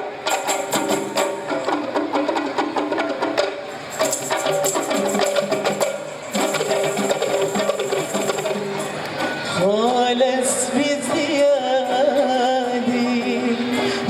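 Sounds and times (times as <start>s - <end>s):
instrumental melody: 0.0s - 9.8s
hand percussion: 0.0s - 10.0s.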